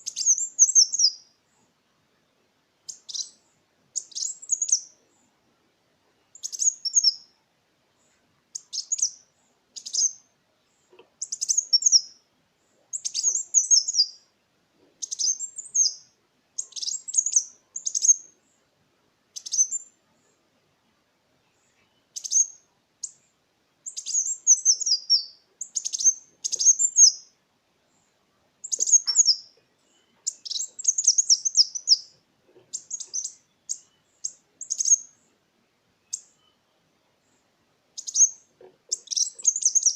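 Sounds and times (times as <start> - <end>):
sunbird twittering: 0.0 - 1.3, 2.9 - 5.0, 6.3 - 7.3, 8.5 - 12.2, 12.9 - 14.2, 15.0 - 18.6, 19.3 - 20.0, 21.6 - 32.1, 32.7 - 35.3, 36.0 - 37.4, 38.0 - 39.9.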